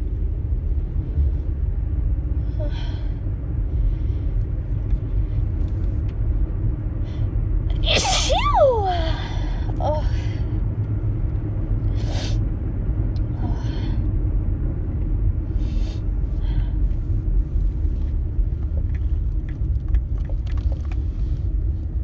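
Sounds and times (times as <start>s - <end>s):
low rumble: 0.0s - 22.0s
woman sneezing: 7.8s - 9.4s.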